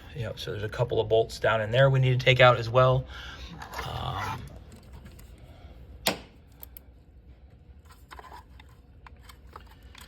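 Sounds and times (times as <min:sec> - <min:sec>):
tools and parts clicking: 0:07.9 - 0:10.0.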